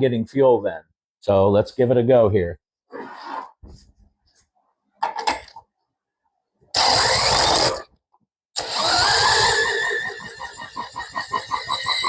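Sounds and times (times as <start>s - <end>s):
drill spinning engine over: 6.8s - 7.8s, 8.6s - 12.0s
small engine firing and running: 6.8s - 7.8s, 8.6s - 12.0s.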